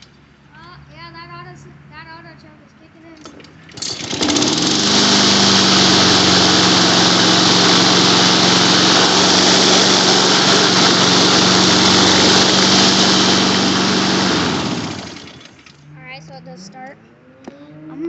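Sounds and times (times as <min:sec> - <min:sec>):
lawn mower engine running: 0:03.7 - 0:15.8.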